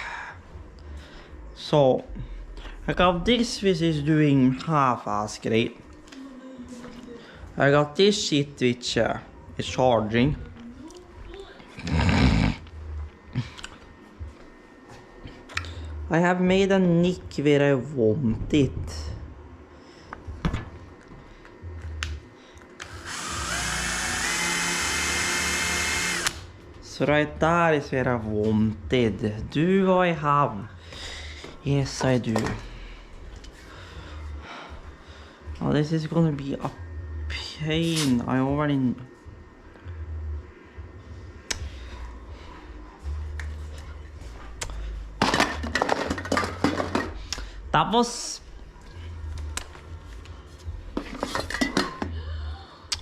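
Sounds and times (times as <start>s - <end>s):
power drill whining: 22.8s - 26.4s
metal items clinking and rattling: 45.2s - 47.2s.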